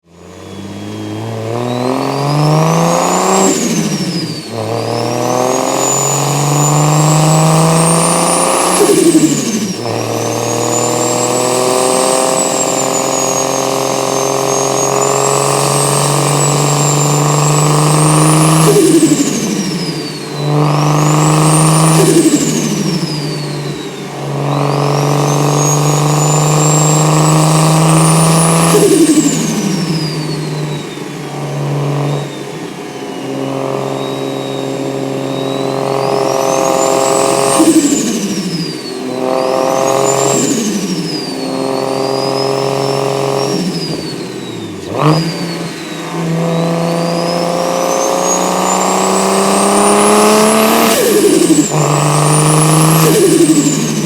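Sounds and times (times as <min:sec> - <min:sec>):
car engine accelerating: 0:00.0 - 0:54.0
turbo whistle: 0:00.1 - 0:54.0.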